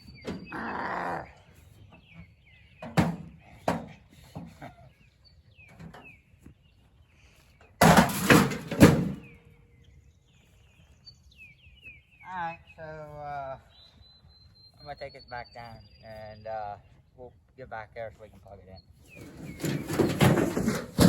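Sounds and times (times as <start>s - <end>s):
birds chirping faintly: 0.0s - 21.0s
microwave crashing clatter: 7.8s - 9.3s, 19.2s - 21.0s.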